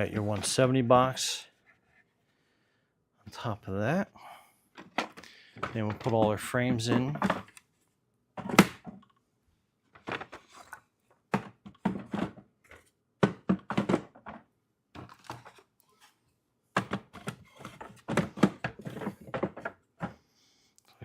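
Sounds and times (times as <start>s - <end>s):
wooden frames knocking in box: 13.2s - 14.4s.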